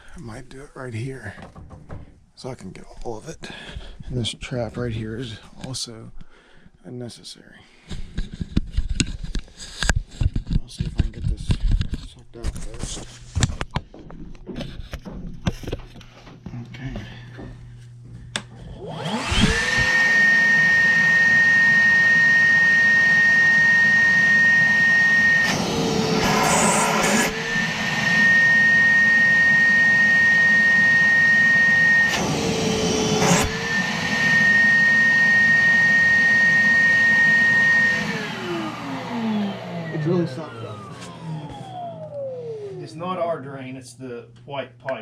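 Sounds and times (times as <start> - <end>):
shop vacuum whining: 16.4 - 43.6.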